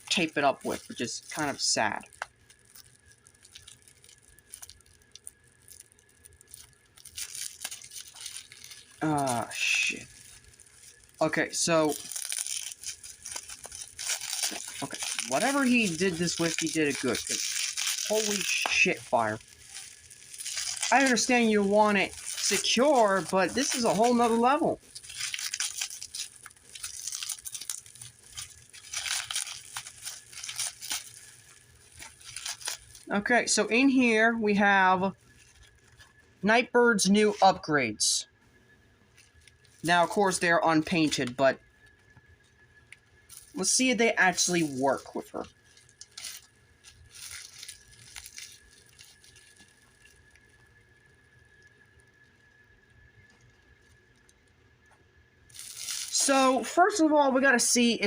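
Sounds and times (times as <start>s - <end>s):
tape ripping: 0.0s - 33.1s, 44.3s - 50.5s, 55.5s - 56.4s
wrapping crinkling: 0.0s - 34.2s, 34.9s - 36.4s, 38.6s - 57.1s
packaging clicks and rustling: 0.1s - 33.1s, 43.3s - 43.7s, 44.3s - 50.7s, 55.5s - 56.4s.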